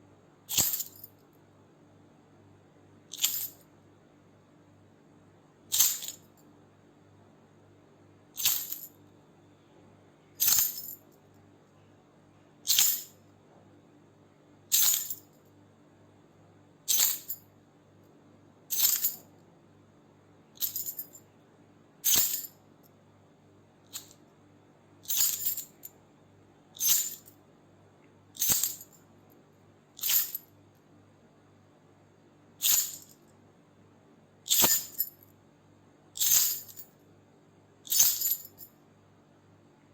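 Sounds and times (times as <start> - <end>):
keys jingling: 8.4 - 8.9, 25.1 - 25.8, 26.8 - 27.2, 28.4 - 28.9, 30.0 - 30.4, 32.6 - 33.1, 34.5 - 35.1, 36.2 - 36.8, 37.9 - 38.6.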